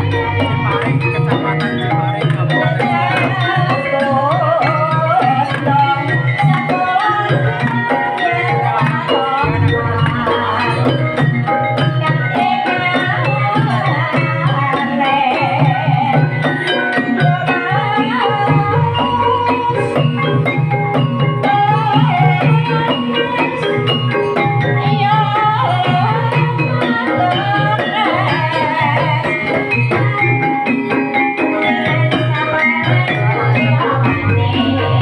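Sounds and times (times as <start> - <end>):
gamelan melody: 0.0 - 35.0
hand drums beating: 0.0 - 35.0.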